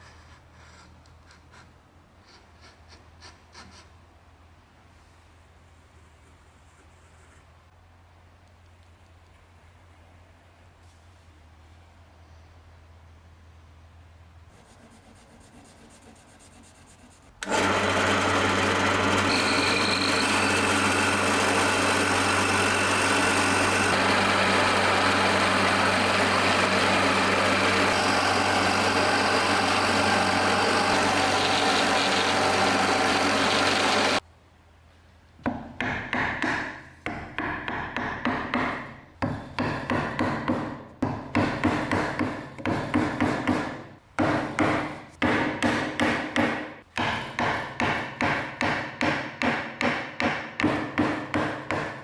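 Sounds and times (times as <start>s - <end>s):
power tool running: 17.4s - 34.2s.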